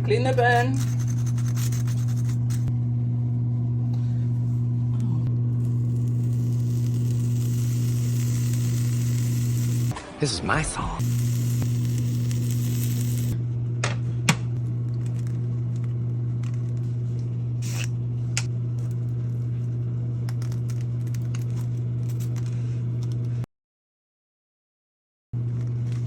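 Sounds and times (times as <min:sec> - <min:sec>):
low electrical hum: 0:00.0 - 0:10.0, 0:11.0 - 0:23.4, 0:25.4 - 0:26.0.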